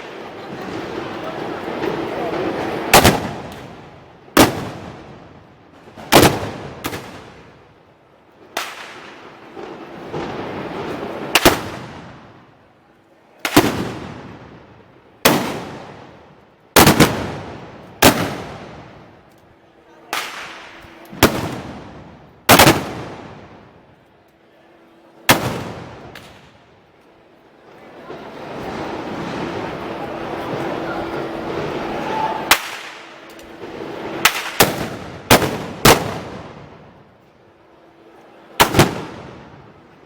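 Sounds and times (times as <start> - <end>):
black-powder gun shots echoing: 16.8 - 17.4, 20.2 - 23.3, 34.3 - 36.7, 38.6 - 39.4.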